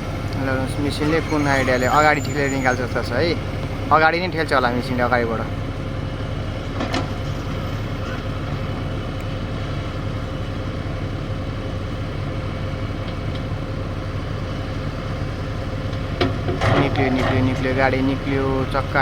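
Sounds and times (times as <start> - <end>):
excavator diesel engine: 0.0 - 19.0
truck engine running: 0.0 - 19.0.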